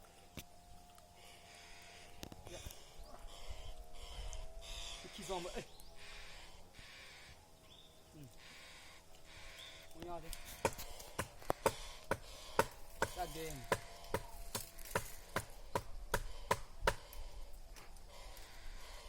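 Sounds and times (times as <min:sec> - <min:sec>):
blade chopping into wood: 0:10.5 - 0:17.1.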